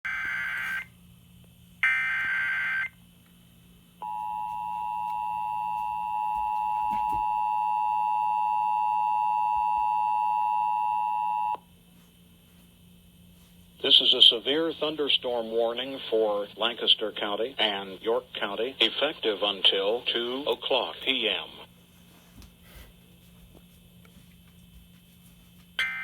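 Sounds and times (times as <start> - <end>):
two-tone alarm signal: 0.0 - 0.9, 1.8 - 3.0, 4.0 - 11.6, 25.8 - 26.0.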